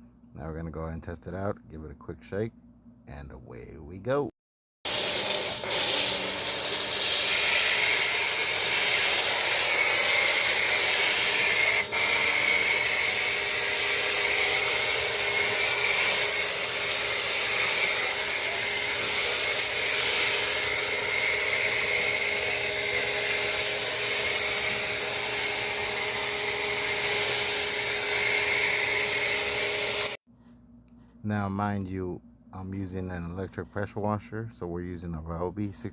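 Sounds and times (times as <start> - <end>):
electric pump motor hum: 4.9 - 30.2
pressure washer spray hissing: 4.9 - 30.2.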